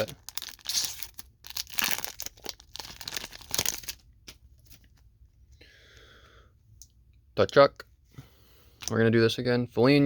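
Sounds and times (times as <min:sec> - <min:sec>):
foil wrapper crinkling and tearing: 0:00.0 - 0:04.9.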